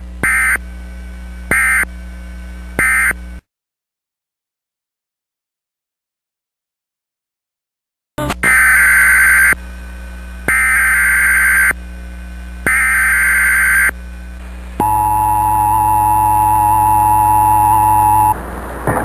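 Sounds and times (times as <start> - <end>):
buzzy digital data bursts: 1.5 - 1.9, 8.4 - 14.0
two-tone attention signal: 14.8 - 18.4.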